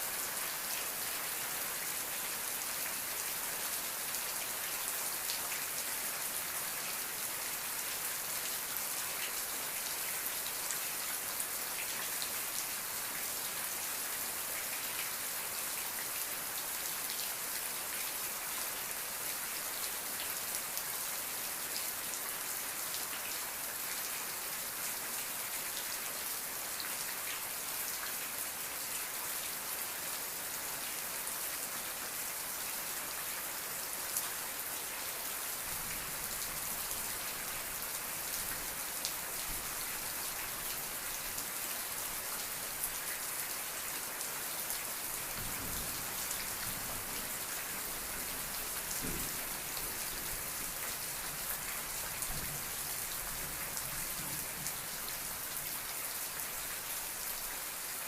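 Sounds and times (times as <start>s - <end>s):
rain falling on a surface: 0.0s - 58.0s.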